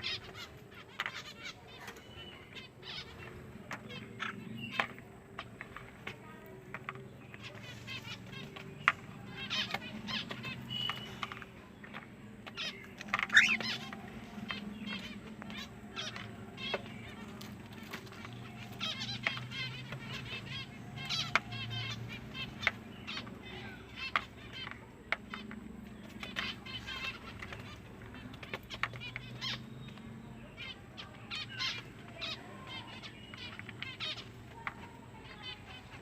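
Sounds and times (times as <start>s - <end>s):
cockatiel chirping and warbling: 12.6s - 13.9s.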